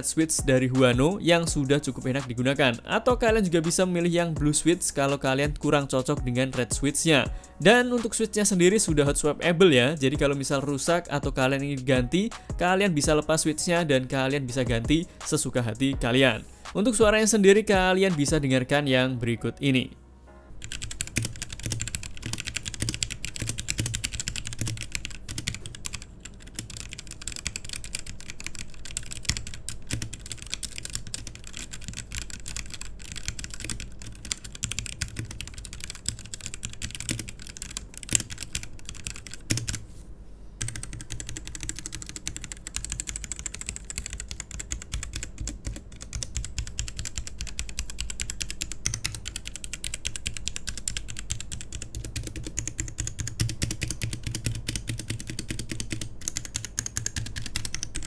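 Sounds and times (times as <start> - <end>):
mechanical keyboard typing: 20.6 - 39.8, 40.6 - 58.0.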